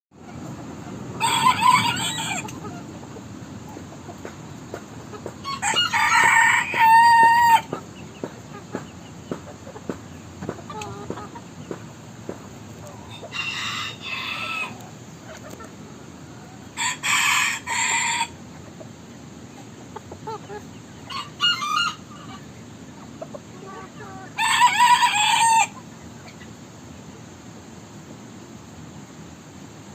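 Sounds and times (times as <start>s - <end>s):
rooster crowing: 1.2s - 2.6s, 5.4s - 7.7s, 13.1s - 14.8s, 16.8s - 18.4s, 21.1s - 22.3s, 24.4s - 25.8s.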